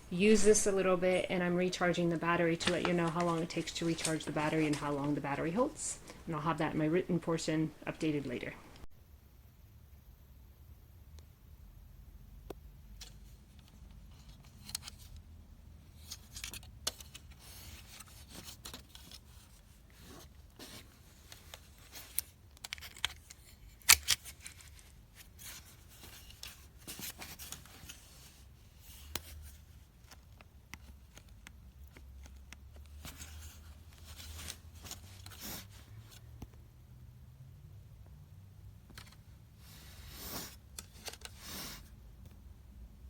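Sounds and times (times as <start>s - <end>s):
rustling and rubbing: 0.0s - 6.4s, 16.0s - 36.4s.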